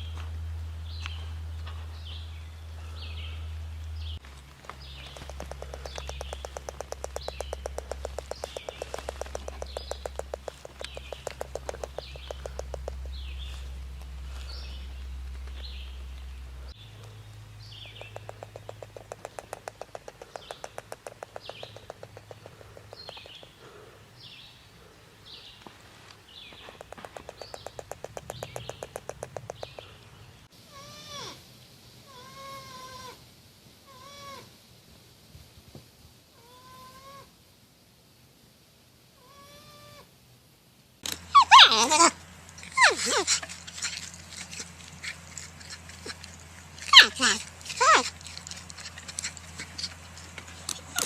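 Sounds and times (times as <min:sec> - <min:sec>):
porcupine squeaking chirps: 0:04.8 - 0:23.8, 0:26.5 - 0:30.0, 0:41.2 - 0:51.0
low whining calls: 0:04.8 - 0:25.0, 0:26.5 - 0:31.4
rapid clicking: 0:05.0 - 0:13.2, 0:17.9 - 0:23.5, 0:26.8 - 0:29.9.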